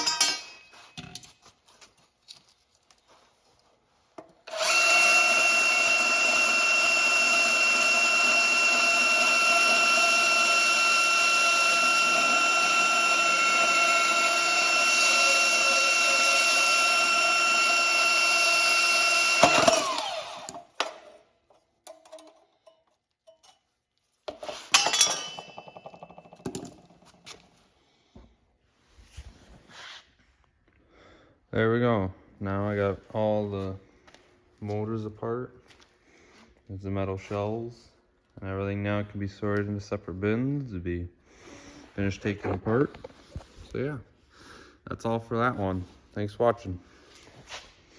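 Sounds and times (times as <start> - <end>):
electric power tool running: 4.5 - 20.7.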